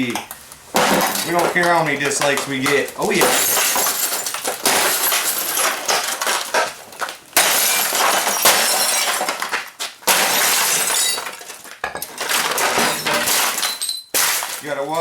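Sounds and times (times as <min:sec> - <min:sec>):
pieces crashing and clattering: 0:00.0 - 0:15.0
glass shattering: 0:00.1 - 0:15.0.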